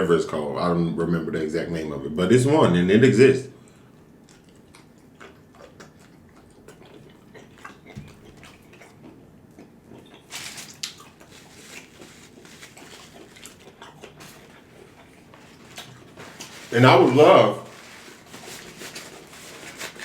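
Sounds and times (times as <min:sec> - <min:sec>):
wet chewing and smacking: 0:03.7 - 0:16.6.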